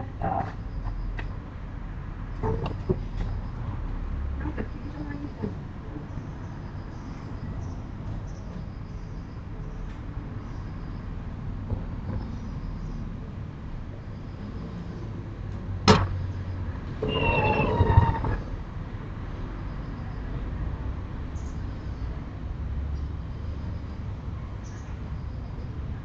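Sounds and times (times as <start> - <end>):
sliding window rumbling and squeaking: 16.7 - 18.8.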